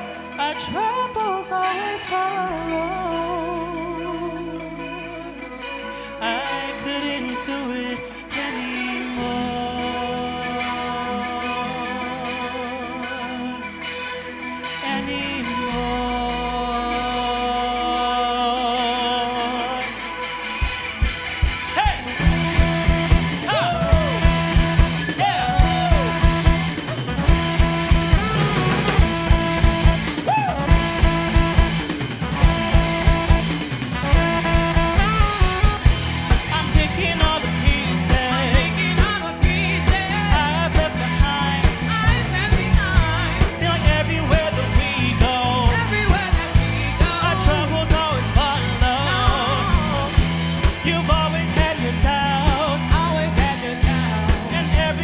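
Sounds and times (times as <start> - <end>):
live band playing: 0.0 - 55.0
bending lead line: 2.0 - 55.0
held bass notes: 2.2 - 55.0
drum kit beat: 20.6 - 55.0.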